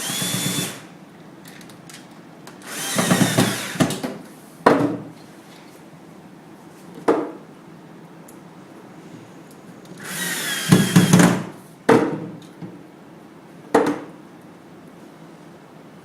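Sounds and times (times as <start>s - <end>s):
cordless drill driving screws: 0.0s - 0.9s, 2.6s - 4.0s, 10.0s - 11.4s.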